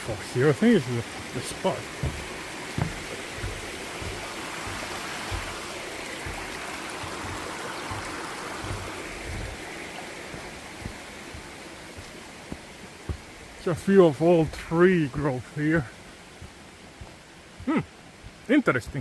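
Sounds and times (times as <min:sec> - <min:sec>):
waterfall rushing and splashing: 0:00.0 - 0:19.0
low thumps: 0:00.7 - 0:13.5.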